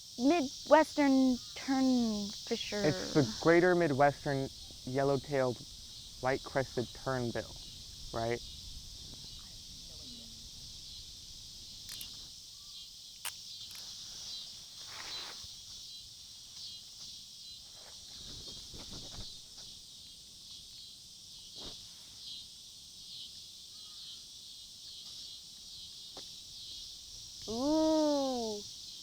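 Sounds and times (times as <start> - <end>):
insects chirring: 0.0 - 29.0
sharp click: 11.9 - 12.2
soft rustles: 13.7 - 15.8.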